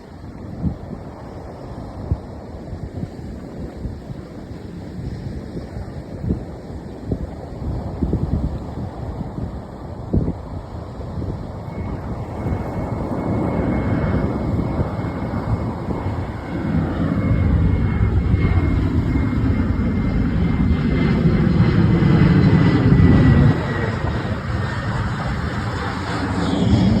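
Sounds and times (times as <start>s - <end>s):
jet engines rumbling: 5.8s - 27.0s
high jet whine: 10.6s - 27.0s.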